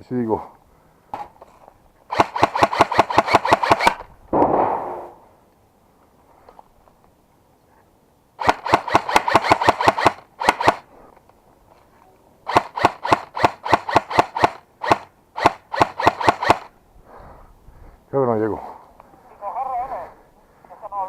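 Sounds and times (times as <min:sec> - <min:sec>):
airsoft gun firing bursts: 0:02.1 - 0:05.0, 0:08.4 - 0:10.9, 0:12.5 - 0:16.7.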